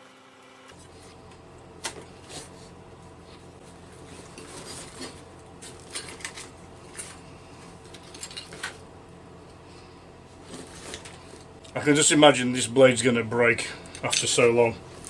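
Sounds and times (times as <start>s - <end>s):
steady low hum: 0.4s - 15.0s
metal tools clinking: 7.9s - 8.7s.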